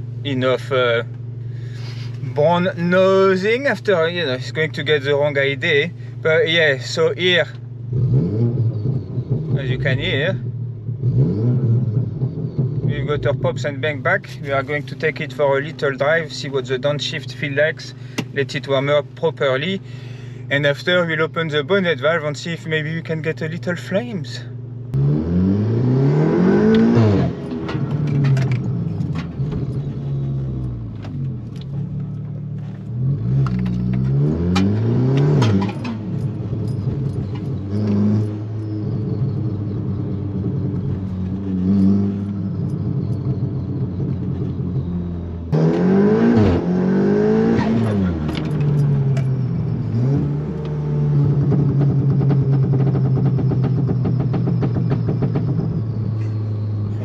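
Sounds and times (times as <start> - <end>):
car engine revving: 0.0 - 22.2, 23.0 - 57.0
exhaust pops and crackles: 26.7 - 44.7, 47.6 - 57.0.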